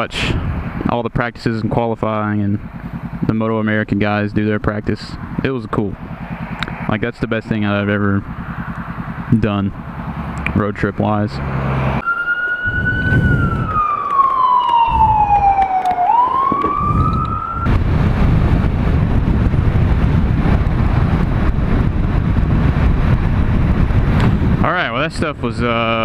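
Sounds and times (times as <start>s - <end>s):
wind noise on microphone: 0.0s - 1.1s, 12.6s - 26.0s
motorcycle engine rumble: 0.0s - 26.0s
siren wailing: 11.6s - 17.9s.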